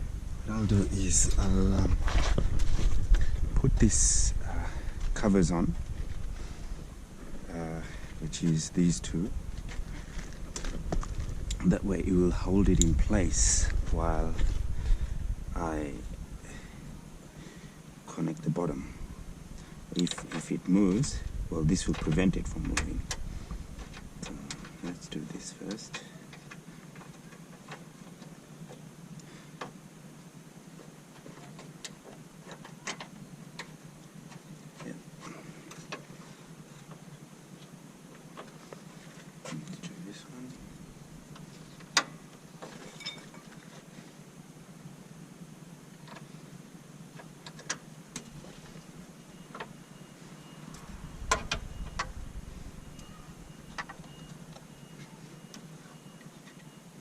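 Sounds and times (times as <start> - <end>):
low steady hum: 0.0 - 57.0
light clicks and taps of metal parts: 23.8 - 29.8, 53.7 - 54.7.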